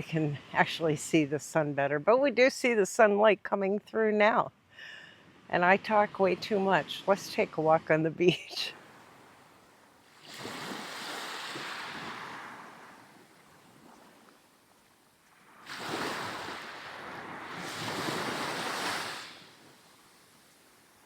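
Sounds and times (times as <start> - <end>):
waves washing up a beach: 8.7 - 21.0.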